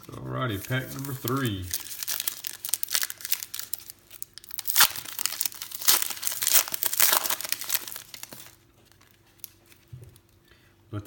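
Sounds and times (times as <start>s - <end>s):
wrapper tearing and crinkling: 0.0s - 10.3s.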